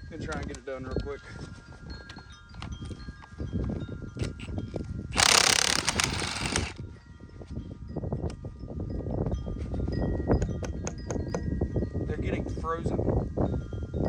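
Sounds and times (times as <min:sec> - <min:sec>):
wind chimes ringing faintly: 0:00.0 - 0:05.1, 0:06.8 - 0:14.0
socket tool clicking on lug nuts: 0:05.2 - 0:06.8.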